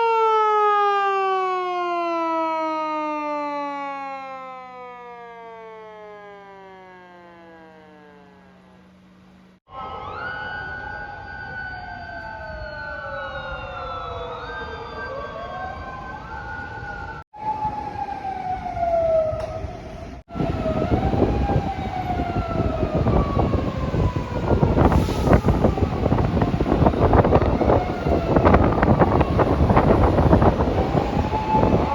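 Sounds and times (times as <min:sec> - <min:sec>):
emergency sirens wailing: 0:00.0 - 0:31.9
rushing noise: 0:19.8 - 0:31.9.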